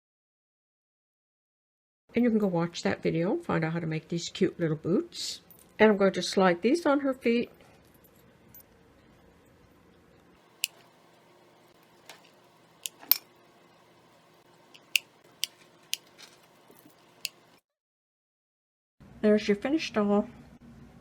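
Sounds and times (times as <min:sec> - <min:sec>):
small sharp clicks and taps: 0:10.6 - 0:13.3, 0:14.4 - 0:17.6.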